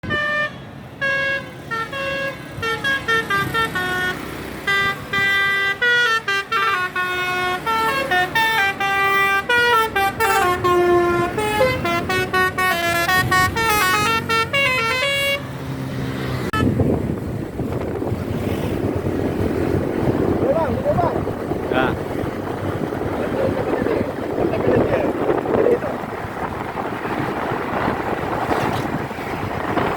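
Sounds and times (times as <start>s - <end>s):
multi-trumpet bus horn tune: 0.0s - 15.6s, 16.4s - 16.9s
moving bus: 0.0s - 29.9s
wind rushing: 16.4s - 29.9s.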